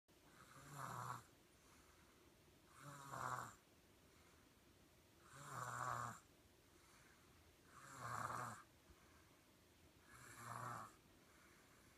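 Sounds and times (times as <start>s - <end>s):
baby snoring: 0.3s - 1.3s, 2.7s - 3.6s, 5.2s - 6.3s, 7.6s - 8.7s, 10.0s - 11.0s.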